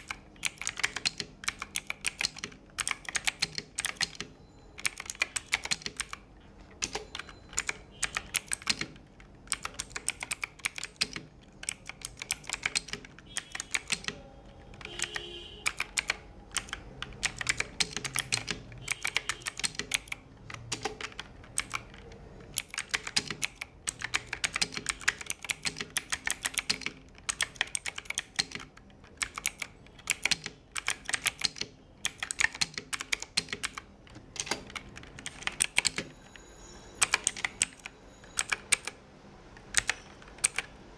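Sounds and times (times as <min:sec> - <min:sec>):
mechanical keyboard typing: 0:00.0 - 0:36.4, 0:37.0 - 0:40.9.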